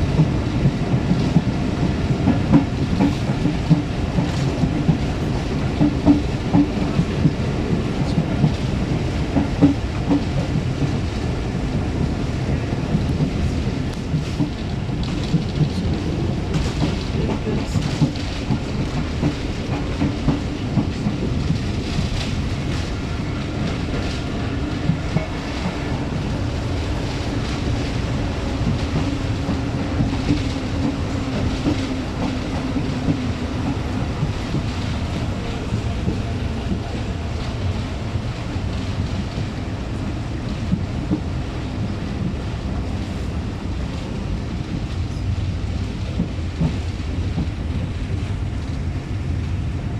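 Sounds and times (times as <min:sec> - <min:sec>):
train rumbling along track: 0:00.0 - 0:49.9.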